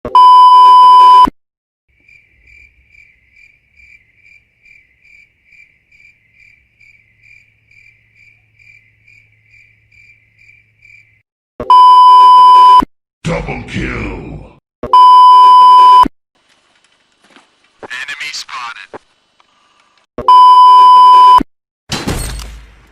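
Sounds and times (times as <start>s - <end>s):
loud censor beep: 0.1s - 1.3s, 11.6s - 12.9s, 14.9s - 16.1s, 20.2s - 21.5s
crickets chirping: 1.9s - 11.2s.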